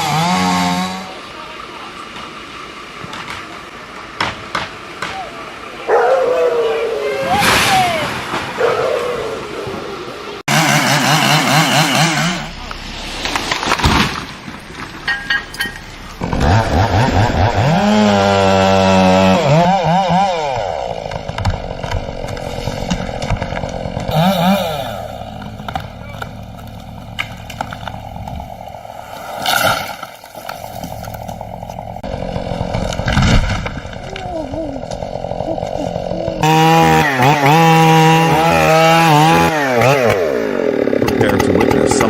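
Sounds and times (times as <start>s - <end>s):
chainsaw revving: 0.0s - 1.2s, 10.4s - 12.6s, 16.2s - 29.6s, 30.8s - 42.0s.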